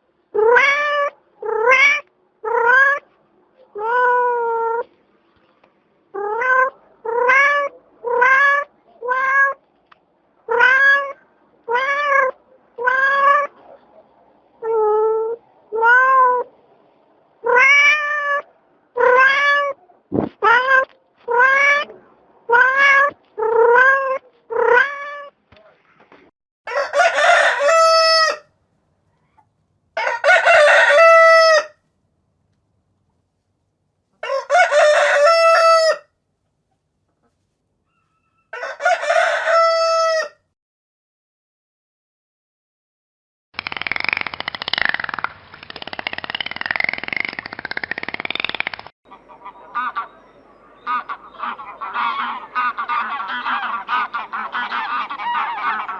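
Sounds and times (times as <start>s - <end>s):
cat meowing: 0.4s - 3.0s, 3.7s - 4.9s, 6.2s - 9.6s, 10.5s - 13.6s, 14.6s - 16.5s, 17.4s - 19.8s, 20.4s - 25.4s
rooster crowing: 26.7s - 28.5s, 30.0s - 31.8s, 34.2s - 36.1s, 37.9s - 40.4s.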